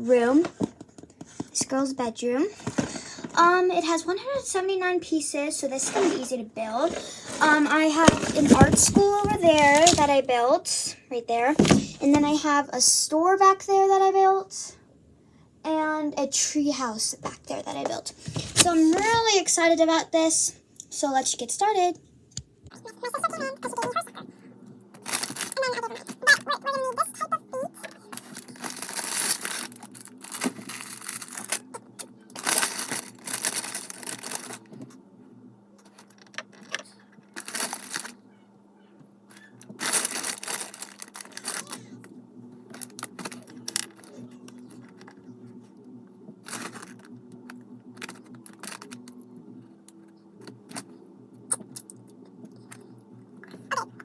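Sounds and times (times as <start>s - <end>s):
plastic packaging rustling and tearing: 2.6s - 3.5s, 5.7s - 10.3s, 18.2s - 19.3s, 25.0s - 27.2s, 28.0s - 34.7s, 37.4s - 38.2s, 39.7s - 42.0s, 42.7s - 45.2s, 46.4s - 47.2s, 48.0s - 49.2s.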